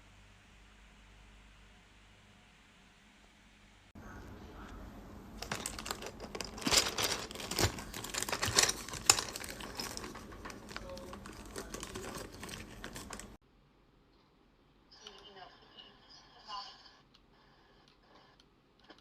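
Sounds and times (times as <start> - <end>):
plastic packaging crinkling: 5.4 - 13.4.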